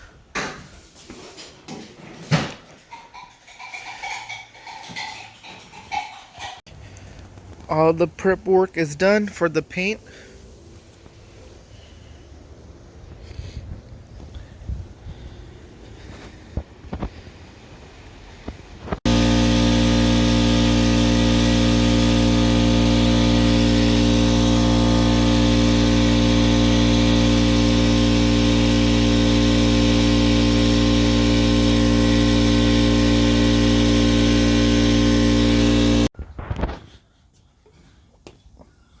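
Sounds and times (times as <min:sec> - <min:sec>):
air compressor running: 0:18.8 - 0:36.1.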